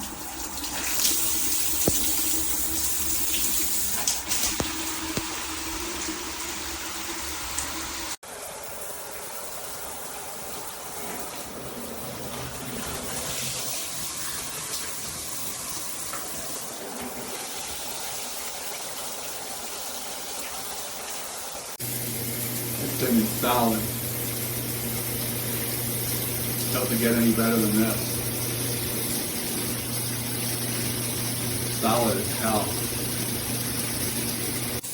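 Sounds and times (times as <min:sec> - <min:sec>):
shower head spraying water: 0:00.0 - 0:08.2, 0:21.0 - 0:34.9.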